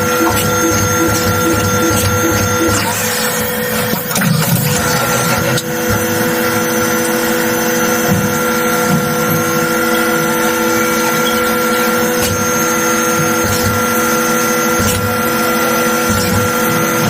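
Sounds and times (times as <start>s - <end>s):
spindle whine: 0.0s - 3.2s.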